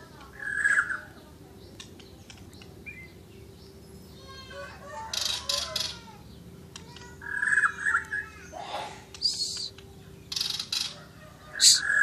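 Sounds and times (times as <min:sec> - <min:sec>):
steady low hum: 0:00.0 - 0:12.0
bird singing whistles and trills: 0:09.2 - 0:09.7.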